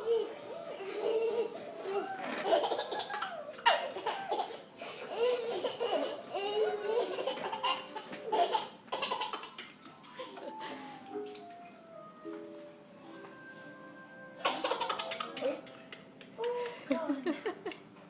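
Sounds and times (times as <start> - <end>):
young child laughing: 0.9 - 6.2, 14.5 - 17.8.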